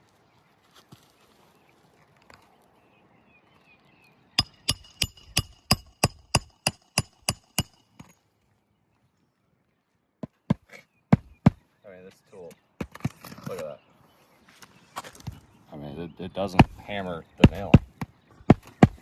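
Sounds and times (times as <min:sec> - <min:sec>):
hammer striking metal tool: 0:04.4 - 0:08.1.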